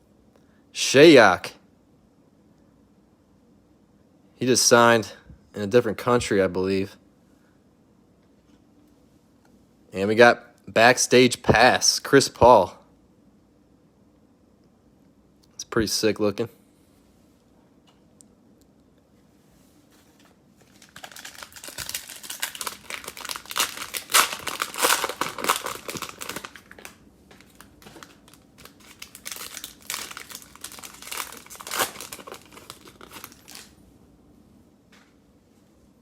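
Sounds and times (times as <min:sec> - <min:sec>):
cellophane wrapper tearing and crumpling: 0:20.6 - 0:33.8.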